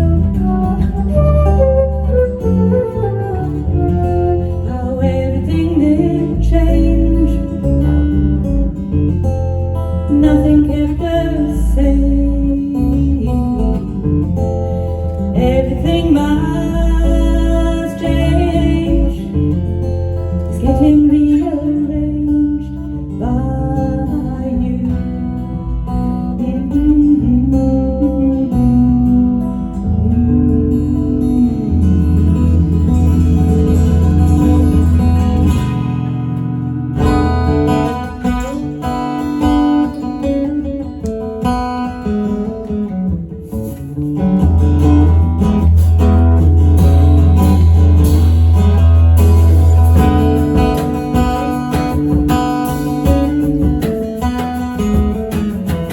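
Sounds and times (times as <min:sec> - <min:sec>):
band playing guitar-led music: 0:00.0 - 0:21.7, 0:28.7 - 0:55.9
low bass line: 0:22.0 - 0:38.0.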